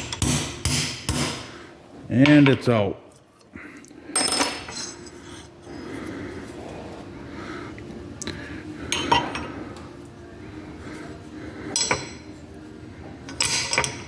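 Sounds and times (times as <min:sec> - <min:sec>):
metal parts clinking: 0:13.3 - 0:14.0.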